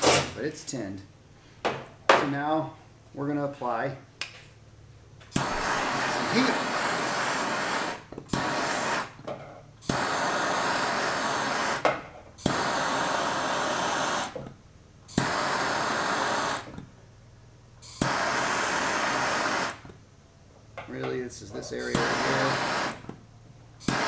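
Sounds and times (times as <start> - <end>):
gas torch hissing: 0.0 - 0.5, 5.3 - 16.9, 17.8 - 20.1, 20.9 - 24.0
torch igniter click: 5.3 - 9.1, 21.9 - 23.2.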